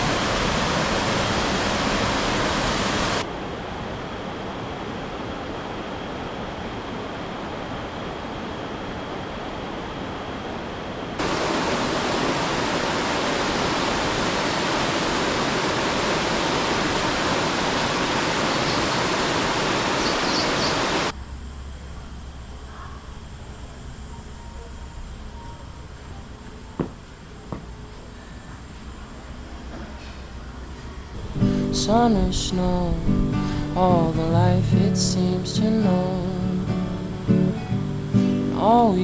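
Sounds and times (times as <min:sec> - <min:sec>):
rushing water: 0:00.0 - 0:10.4, 0:11.1 - 0:21.1.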